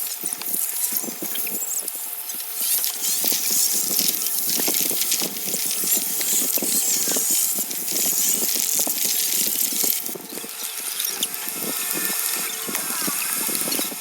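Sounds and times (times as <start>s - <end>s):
hissing noise: 4.8s - 14.0s.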